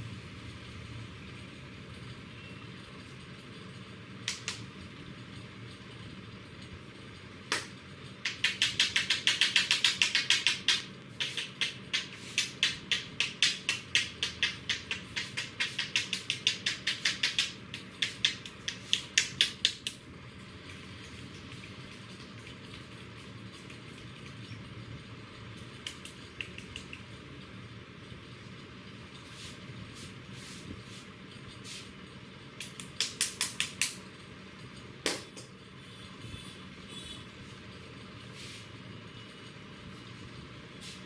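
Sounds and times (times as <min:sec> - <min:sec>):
hands tapping on head: 0:07.5 - 0:20.0, 0:32.6 - 0:34.0
sharp clicks: 0:07.5 - 0:20.0, 0:25.6 - 0:27.2.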